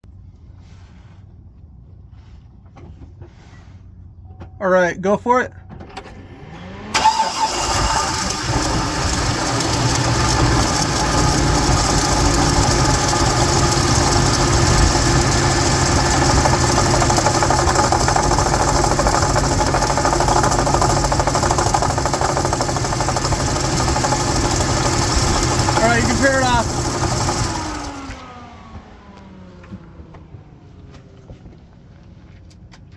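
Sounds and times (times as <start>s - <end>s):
car starter cranking: 5.8s - 28.5s
car engine idling: 6.1s - 32.3s.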